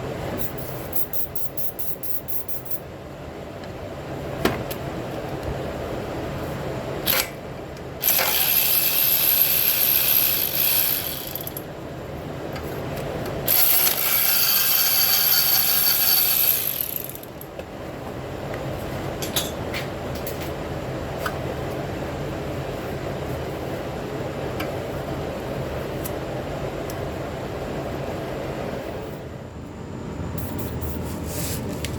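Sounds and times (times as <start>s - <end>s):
pneumatic air ratchet running: 0.4s - 2.8s, 7.0s - 7.4s, 8.0s - 11.6s, 13.5s - 17.4s.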